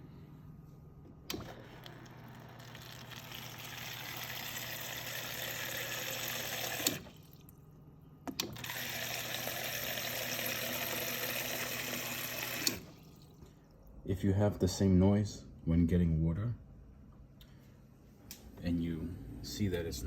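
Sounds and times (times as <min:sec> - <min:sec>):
water running into container: 0:01.4 - 0:07.6, 0:08.6 - 0:13.9.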